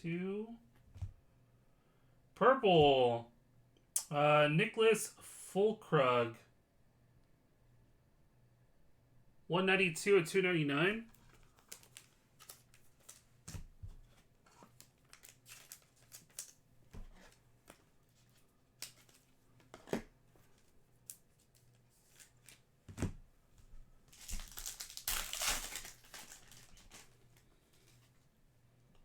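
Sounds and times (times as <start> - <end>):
wrapper crinkling and tearing: 11.2 - 13.3, 14.5 - 16.6, 21.0 - 22.7, 24.1 - 27.4.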